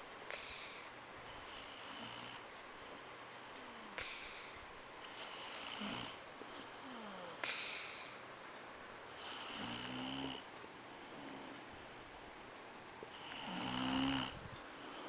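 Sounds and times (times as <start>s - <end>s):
woman snoring: 1.4s - 2.4s, 5.2s - 8.1s, 9.2s - 10.5s, 13.2s - 15.0s.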